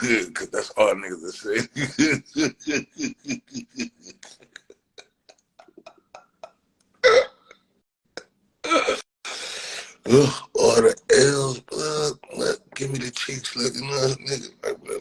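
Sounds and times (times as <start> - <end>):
man laughing croakily: 1.5 - 6.5
breathy hiss: 9.3 - 10.4.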